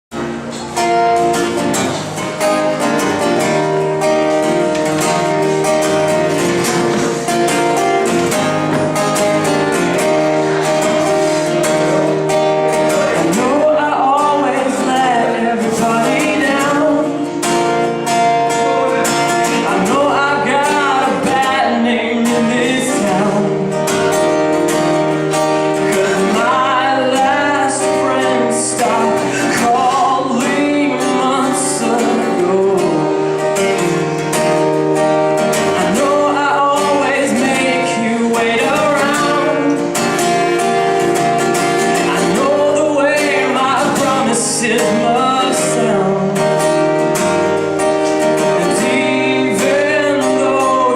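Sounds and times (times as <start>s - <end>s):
band accompaniment: 0.1s - 50.9s
strummed guitar: 0.1s - 50.9s
person singing: 9.7s - 24.3s, 25.4s - 33.6s, 35.4s - 47.4s, 48.0s - 50.9s.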